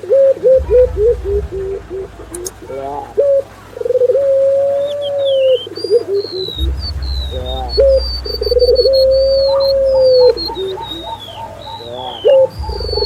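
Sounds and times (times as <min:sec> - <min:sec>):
doves cooing: 0:00.0 - 0:13.0
songbird whistling: 0:03.2 - 0:13.0.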